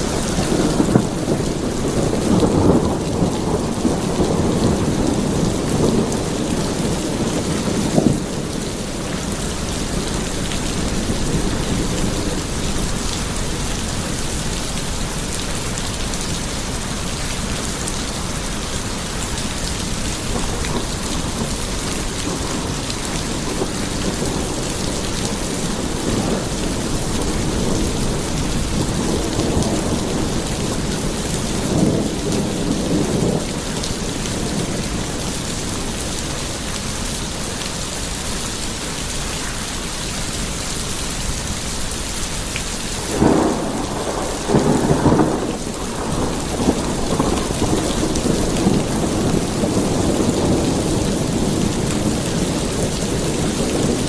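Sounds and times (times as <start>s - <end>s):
rain hissing: 0.0s - 54.0s
thunder rumbling and cracking: 0.0s - 54.0s.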